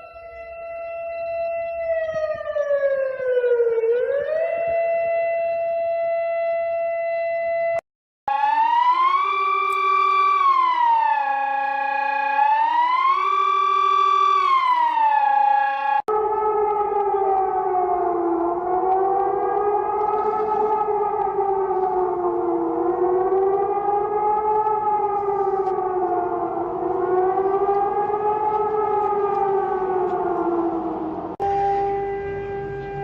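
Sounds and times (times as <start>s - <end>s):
civil defense siren wailing: 0.0s - 33.0s.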